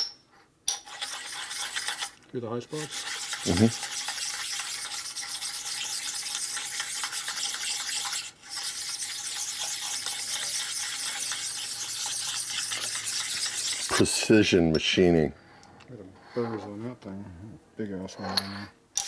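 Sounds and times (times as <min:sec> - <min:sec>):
stone scraping on steel: 0:00.7 - 0:14.4.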